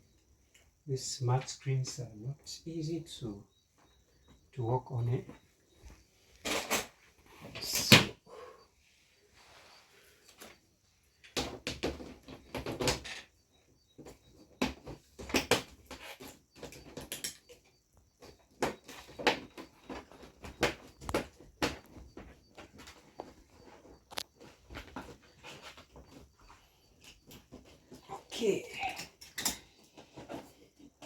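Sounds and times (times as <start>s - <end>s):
handling knocks and clicks: 14.0s - 28.1s.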